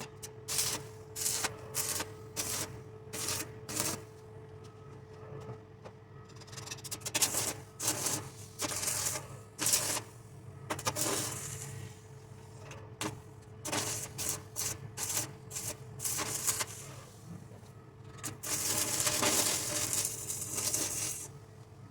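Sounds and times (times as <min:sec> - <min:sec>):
welding arc crackling: 0:00.5 - 0:04.0, 0:07.2 - 0:10.1, 0:10.7 - 0:11.9, 0:13.0 - 0:17.0, 0:18.2 - 0:21.4.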